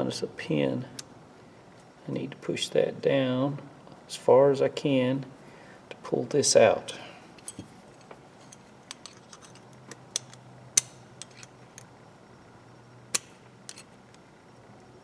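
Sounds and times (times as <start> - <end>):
metallic clicks and taps: 13.2 - 13.9.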